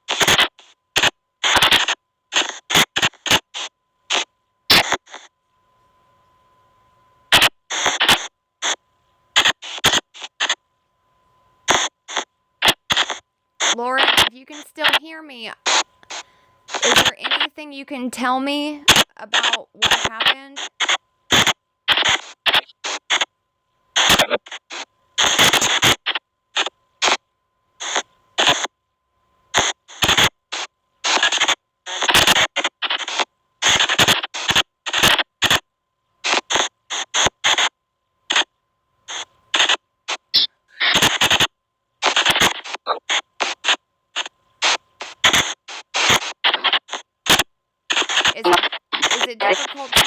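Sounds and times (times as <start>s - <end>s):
faint steady tone: 3.0s - 7.3s, 8.3s - 25.2s.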